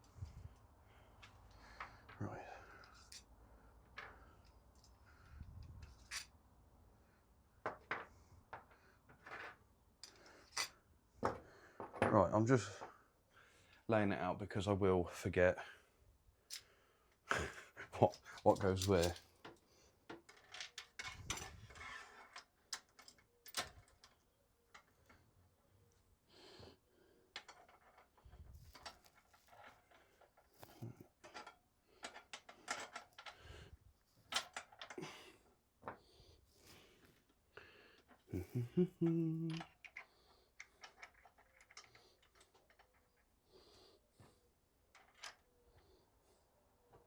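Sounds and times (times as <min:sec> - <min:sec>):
small hardware parts clicking: 0:18.1 - 0:25.2, 0:27.4 - 0:33.4, 0:39.3 - 0:43.3.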